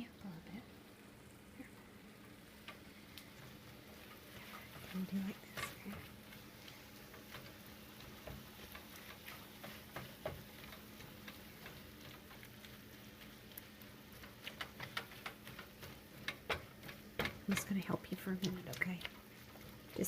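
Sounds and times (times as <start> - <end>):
meat sizzling in a frying pan: 0.0 - 20.0.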